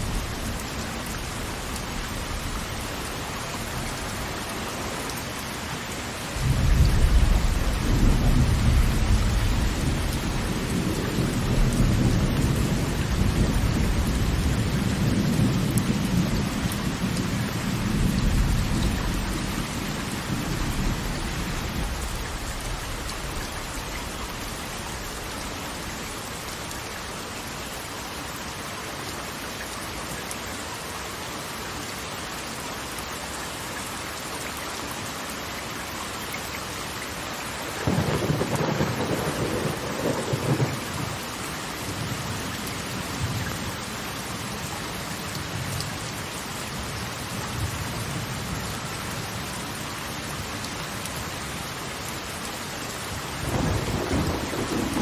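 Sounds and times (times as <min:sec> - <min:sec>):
rain hissing: 0:00.0 - 0:27.6, 0:37.1 - 0:55.0
thunder rumbling: 0:06.4 - 0:23.3, 0:37.8 - 0:41.3, 0:53.4 - 0:55.0.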